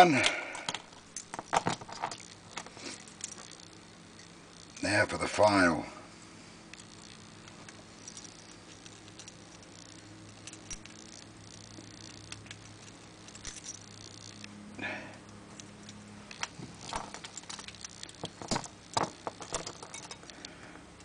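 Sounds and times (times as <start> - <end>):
steady low hum: 0.0 - 21.0
lock picking tools clicking: 0.6 - 4.8, 6.7 - 14.5, 15.5 - 20.4.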